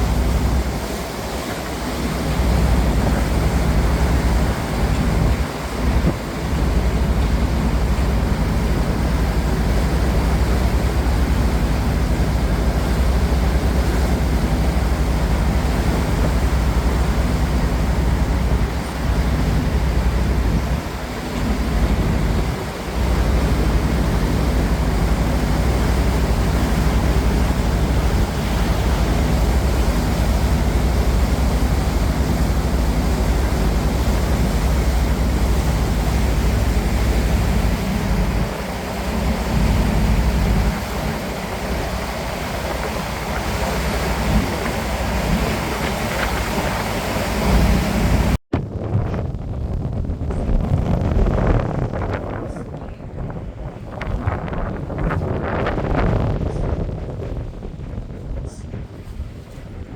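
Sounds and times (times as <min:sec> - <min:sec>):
boat engine humming: 0:00.0 - 0:48.4, 0:49.2 - 0:59.9
hiss of wind and water: 0:00.0 - 0:48.4.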